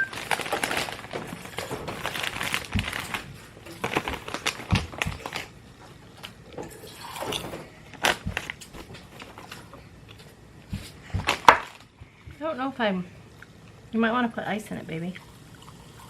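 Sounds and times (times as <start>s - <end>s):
plastic snack bag crinkling: 0.0s - 6.4s, 7.9s - 9.8s.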